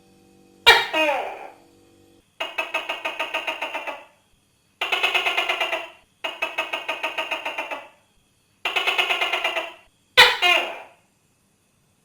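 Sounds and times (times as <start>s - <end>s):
gecko rattling call: 2.4s - 4.2s, 4.8s - 8.0s, 8.6s - 10.9s.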